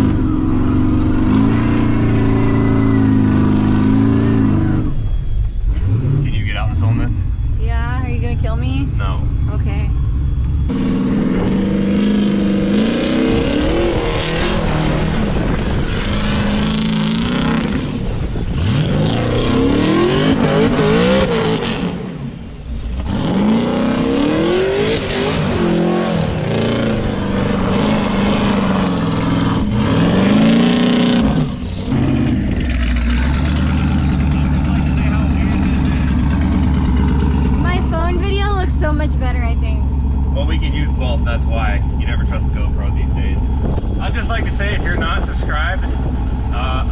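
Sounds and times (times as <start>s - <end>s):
car engine revving hard: 0.0s - 5.0s, 5.7s - 7.2s, 10.6s - 39.6s.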